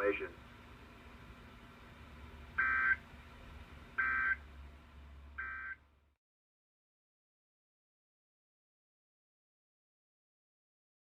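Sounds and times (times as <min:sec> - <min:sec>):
low radio hum: 0:00.0 - 0:06.2
digital tone bursts: 0:02.6 - 0:03.0, 0:04.0 - 0:04.4, 0:05.4 - 0:05.8.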